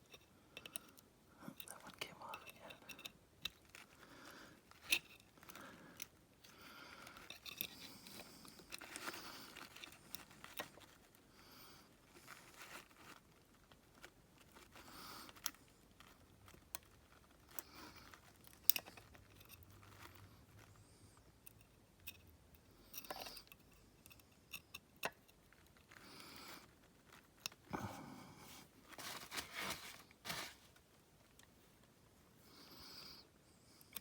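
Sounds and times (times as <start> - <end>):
scraping and rustling of metal parts: 4.6 - 11.3, 28.4 - 30.9.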